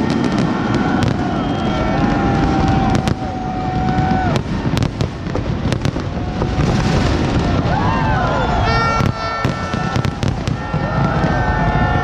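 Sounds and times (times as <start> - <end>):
fireworks bursting: 0.0 - 12.0
whistle-like tone: 8.4 - 9.9.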